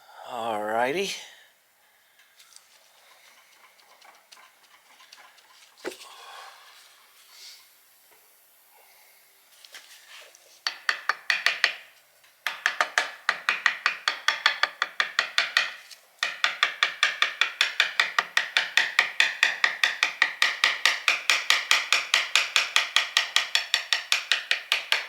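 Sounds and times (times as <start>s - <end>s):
rapid tapping strokes: 2.7s - 6.0s, 10.6s - 25.0s.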